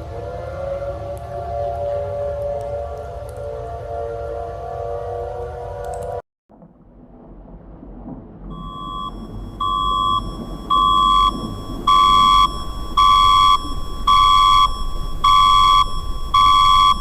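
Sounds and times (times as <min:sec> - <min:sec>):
low rumble: 0:05.4 - 0:17.0
emergency alert beeping: 0:08.5 - 0:17.0.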